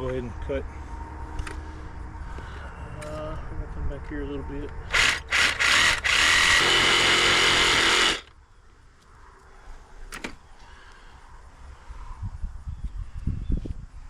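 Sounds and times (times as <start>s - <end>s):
power tool cutting pipe: 4.9s - 8.3s.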